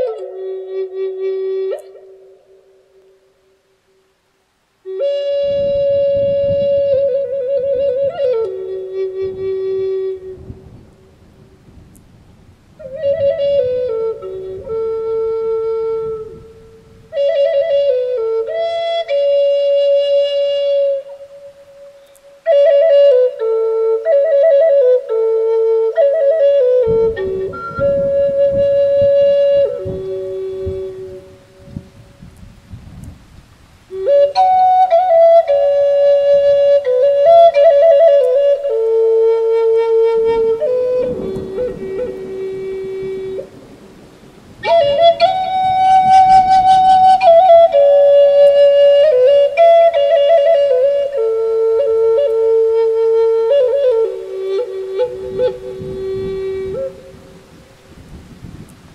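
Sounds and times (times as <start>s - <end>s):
flute playing slow melody: 0.0s - 58.9s
low rumbling thunderstorm: 40.1s - 48.4s, 55.0s - 58.9s.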